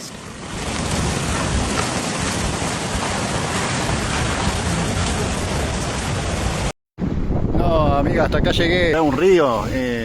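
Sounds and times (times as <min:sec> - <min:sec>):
heavy rain pouring: 0:00.0 - 0:06.7.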